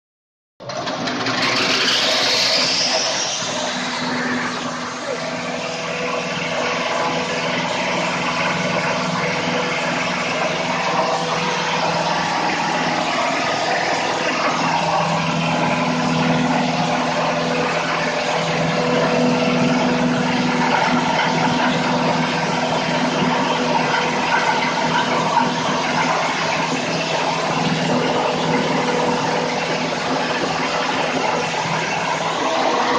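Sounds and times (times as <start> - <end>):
hammer mill droning and whining: 0.6 - 32.9.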